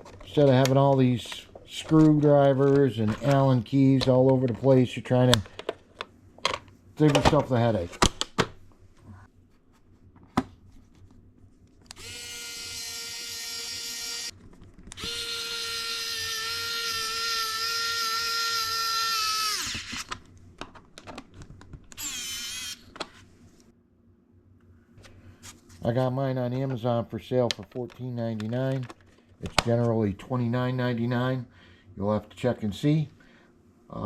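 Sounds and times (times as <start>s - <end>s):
electric screwdriver motor whine: 11.9s - 14.3s, 15.0s - 20.1s, 21.9s - 23.0s.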